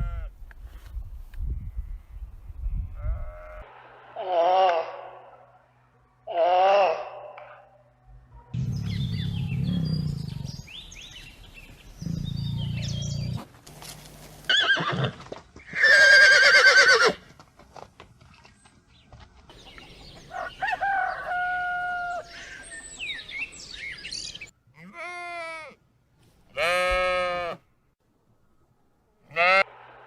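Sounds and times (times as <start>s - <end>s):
low deep animal calls: 8.6s - 10.6s, 12.0s - 13.4s
horse whinnying: 14.5s - 17.2s
rooster crowing: 20.3s - 22.4s.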